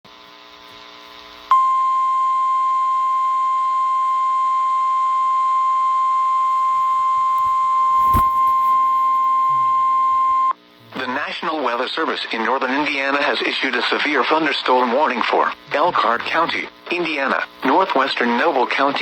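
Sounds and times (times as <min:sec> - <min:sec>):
steady alarm beep: 0:01.5 - 0:10.5.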